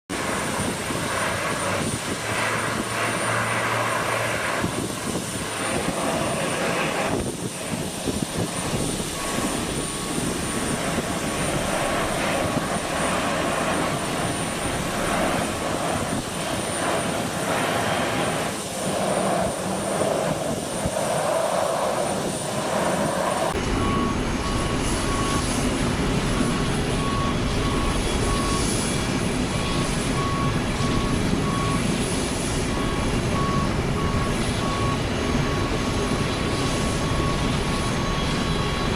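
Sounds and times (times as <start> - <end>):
aircraft engines idling: 0.1 - 38.9
reversing alarm beeps: 4.6 - 17.1, 23.5 - 38.9.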